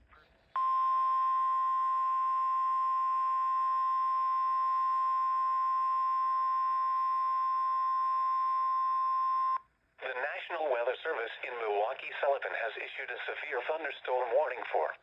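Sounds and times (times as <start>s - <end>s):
steady alarm beep: 0.6s - 9.6s.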